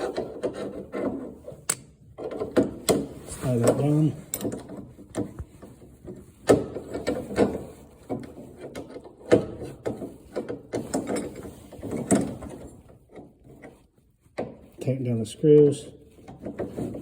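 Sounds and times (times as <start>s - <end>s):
metal clicks and knocks: 0.0s - 14.8s.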